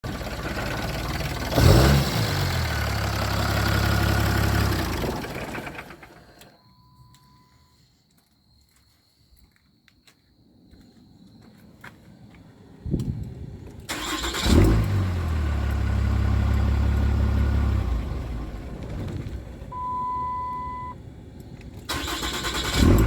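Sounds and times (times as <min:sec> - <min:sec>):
diesel engine idling: 0:00.0 - 0:06.5, 0:13.9 - 0:23.0.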